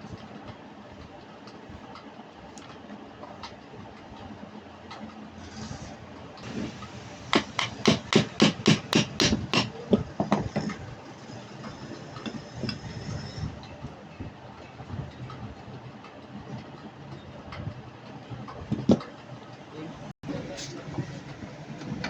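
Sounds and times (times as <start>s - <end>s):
hammer blows: 6.4s - 10.8s.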